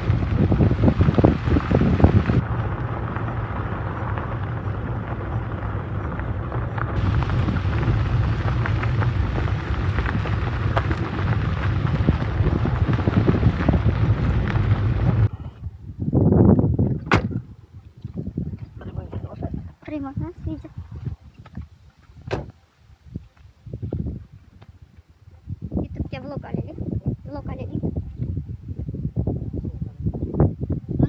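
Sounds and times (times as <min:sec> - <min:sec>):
raindrop ticks: 0:00.0 - 0:15.3
steady rain falling: 0:00.0 - 0:15.3
low rumble: 0:00.0 - 0:17.6.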